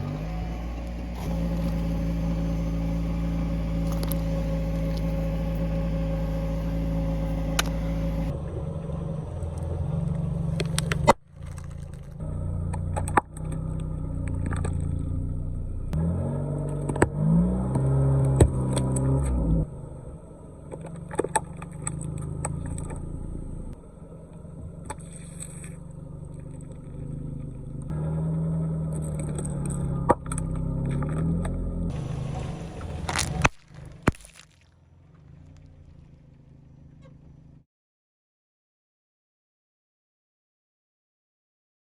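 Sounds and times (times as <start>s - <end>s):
objects crushed under tyres: 0.0s - 6.0s, 10.5s - 13.6s, 28.9s - 36.0s
car engine revving: 0.0s - 34.2s.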